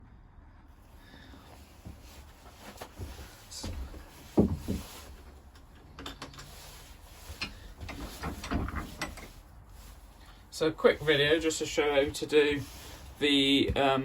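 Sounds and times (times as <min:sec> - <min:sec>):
dull thumps: 0:02.8 - 0:05.2.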